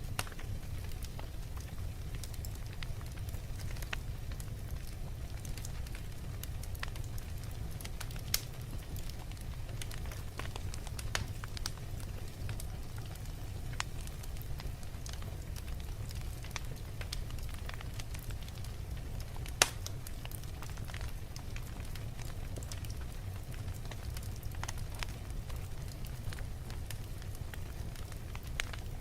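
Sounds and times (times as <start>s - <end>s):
fire crackling: 0.0s - 29.0s
fire pop: 19.5s - 20.0s.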